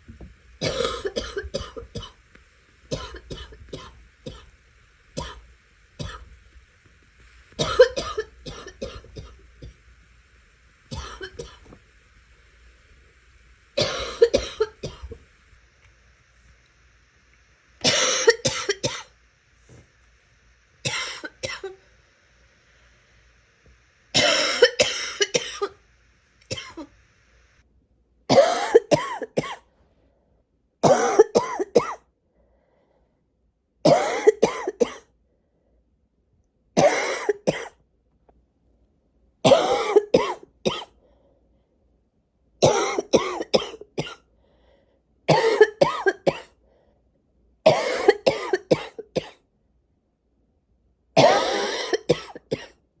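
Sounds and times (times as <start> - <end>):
person coughing in fits: 0.6 - 2.2, 7.6 - 9.3, 17.9 - 19.1, 28.3 - 29.6, 30.8 - 32.0, 33.9 - 35.1, 36.8 - 37.8, 39.5 - 40.9, 42.6 - 44.2, 45.3 - 46.5, 47.7 - 49.4, 51.2 - 52.8.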